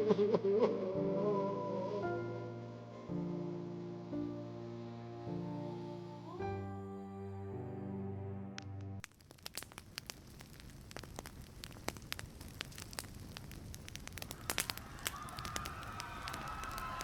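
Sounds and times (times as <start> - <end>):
fire crackling: 8.6 - 17.0.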